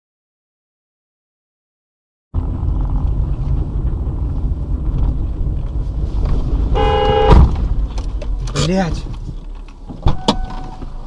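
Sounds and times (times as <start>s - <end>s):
road noise: 2.4s - 11.0s
vehicle engine rumble: 2.4s - 11.0s
short pitched tone: 6.8s - 7.4s.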